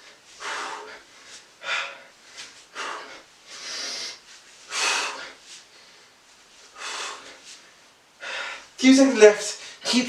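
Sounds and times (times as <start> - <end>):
man breathing hard: 0.0 - 7.6, 8.2 - 8.8.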